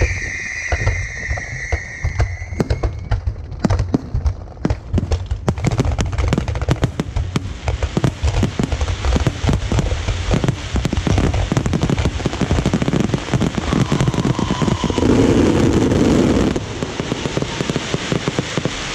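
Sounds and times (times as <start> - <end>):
fireworks bangs and crackles: 0.0 - 18.9
loud steady rushing noise: 13.0 - 18.9.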